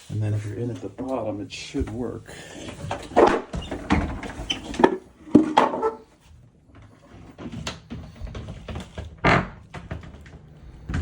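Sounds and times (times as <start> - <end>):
closet door sliding scrapes: 2.4 - 11.0.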